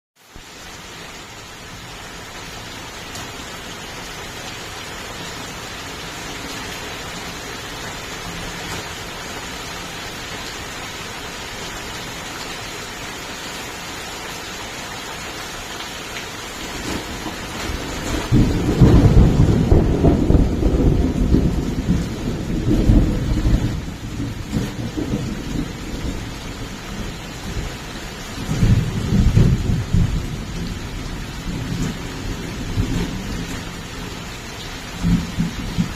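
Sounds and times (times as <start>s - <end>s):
steady rain falling: 0.2s - 35.9s
thunder rumbling: 16.8s - 27.8s, 28.4s - 34.2s, 35.0s - 35.9s.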